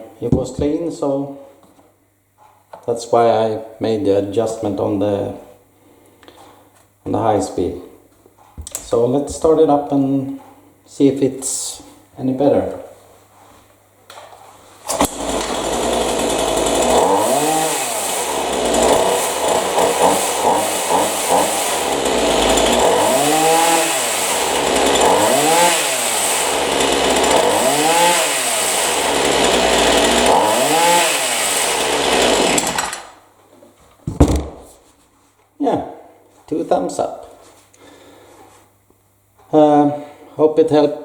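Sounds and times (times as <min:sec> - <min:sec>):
chainsaw revving and idling: 0:14.9 - 0:33.0.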